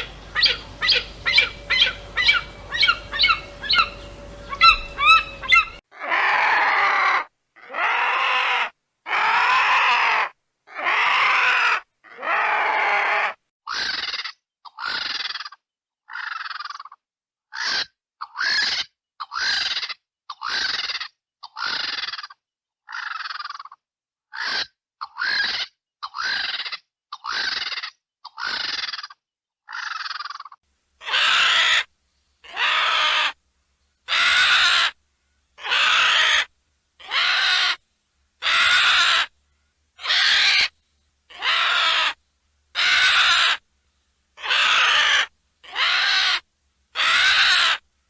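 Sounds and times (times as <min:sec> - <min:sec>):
vulture harsh calls: 0:00.0 - 0:15.5, 0:31.0 - 0:33.4, 0:34.0 - 0:35.0, 0:35.6 - 0:37.8, 0:38.4 - 0:39.4, 0:40.0 - 0:43.7, 0:44.4 - 0:47.9.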